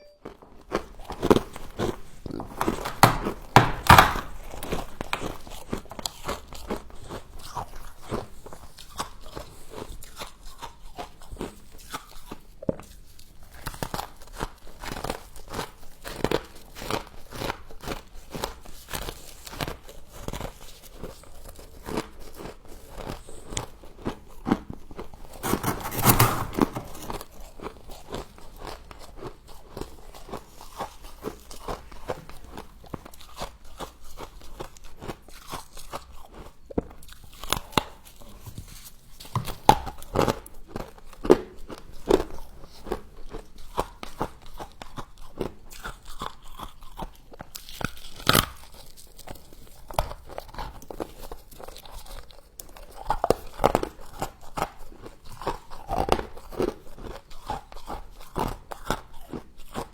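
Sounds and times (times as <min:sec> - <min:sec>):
person chewing crunchy frost: 0:25.3 - 0:38.4, 0:40.8 - 0:59.9.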